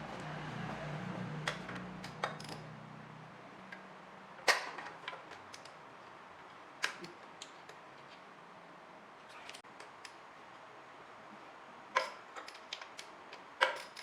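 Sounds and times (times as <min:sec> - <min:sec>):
metallic clicks of tools: 0:01.4 - 0:02.7, 0:12.0 - 0:14.0.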